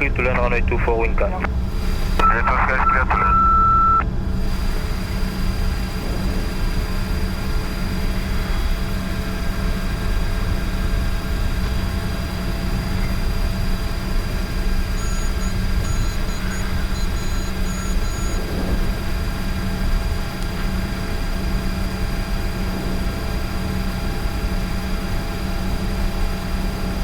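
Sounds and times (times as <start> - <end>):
jet engines idling hum and whine: 0.0 - 27.0
high-pitched beeping: 2.2 - 4.0.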